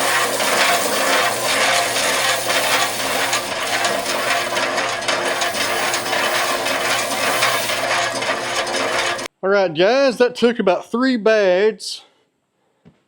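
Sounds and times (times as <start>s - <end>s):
concrete churning in drum: 0.0s - 9.3s
concrete mixer motor hum: 0.0s - 9.3s.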